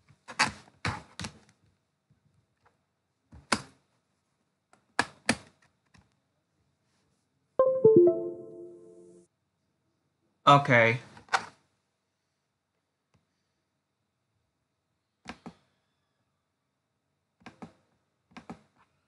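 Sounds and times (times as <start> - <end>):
computer notification chime: 7.6 - 9.1.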